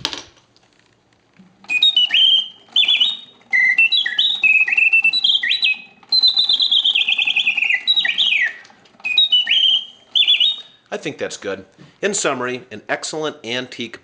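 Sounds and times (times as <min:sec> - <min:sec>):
mechanical bird whistle warbling: 0:01.6 - 0:10.8.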